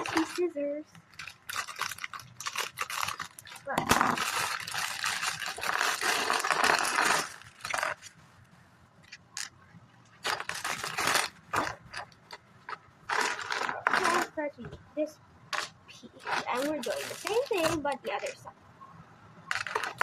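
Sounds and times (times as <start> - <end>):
plastic bag crinkling and tearing: 0.0 - 0.5, 1.1 - 8.1, 10.2 - 14.3, 15.6 - 18.4, 19.5 - 20.0.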